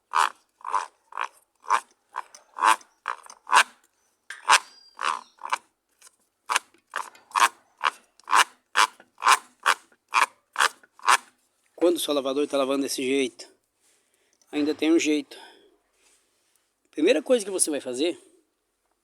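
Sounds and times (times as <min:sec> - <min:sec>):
rasping grind: 0:00.0 - 0:03.8, 0:04.4 - 0:05.6, 0:06.5 - 0:11.4.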